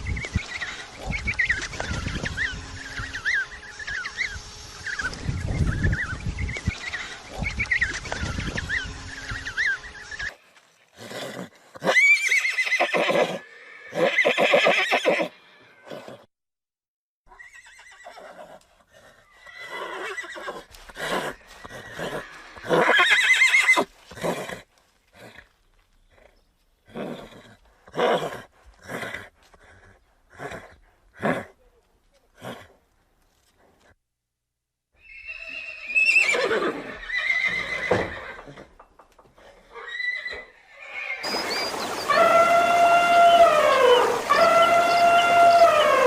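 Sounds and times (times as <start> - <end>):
horses neighing: 11.0 - 16.3, 19.2 - 25.4, 35.0 - 38.8, 39.4 - 46.0.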